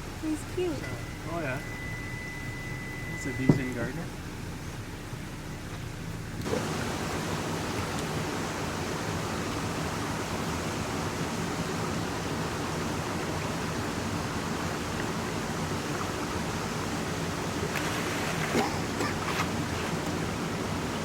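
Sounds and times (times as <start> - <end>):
river and waterfalls rushing: 6.5 - 21.0.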